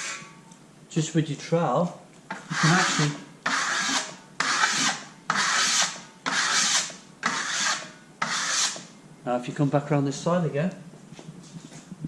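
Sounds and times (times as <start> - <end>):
trowel scraping metal coating: 2.3 - 8.9.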